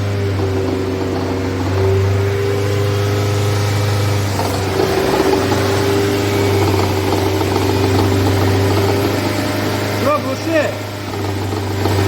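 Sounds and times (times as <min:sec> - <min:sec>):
car engine running: 0:00.0 - 0:12.0
rough uneven engine noise: 0:00.0 - 0:12.0.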